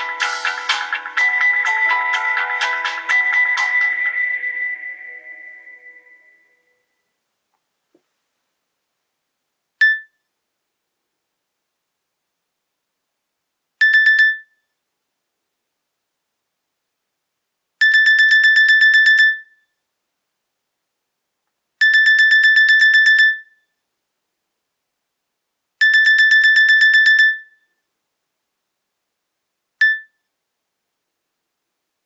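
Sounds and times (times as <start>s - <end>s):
rapid electronic ringtone beeping: 0.0s - 6.5s.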